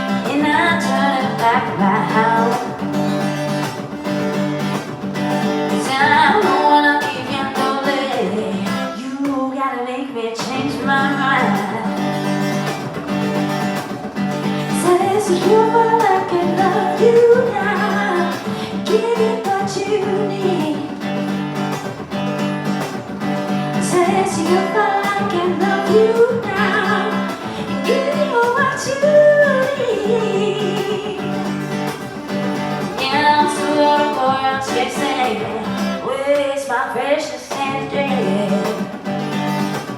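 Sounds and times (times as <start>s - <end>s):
person singing: 0.0s - 2.9s, 5.8s - 12.0s, 14.7s - 21.0s, 23.8s - 31.7s, 32.9s - 39.0s
guitar chords: 0.0s - 9.5s, 10.4s - 36.8s, 37.4s - 39.9s.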